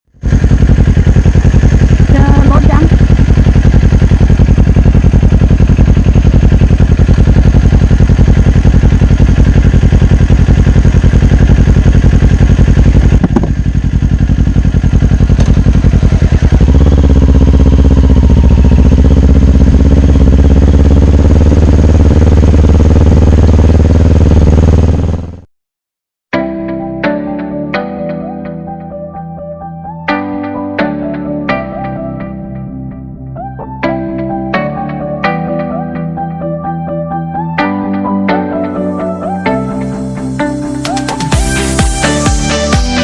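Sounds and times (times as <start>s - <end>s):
motorcycle engine running: 0.0s - 25.5s, 37.3s - 43.0s.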